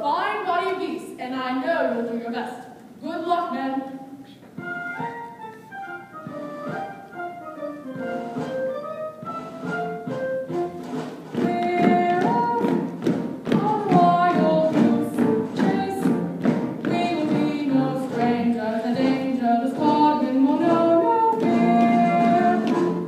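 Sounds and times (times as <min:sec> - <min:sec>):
orchestral accompaniment: 0:04.6 - 0:23.0
percussive thumps: 0:08.0 - 0:20.0
voices singing: 0:16.9 - 0:23.0.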